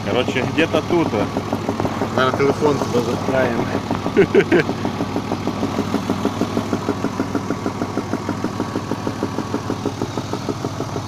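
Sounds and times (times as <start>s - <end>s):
car engine idling: 0.0s - 11.0s
rapid ticking engine knock: 0.0s - 11.0s.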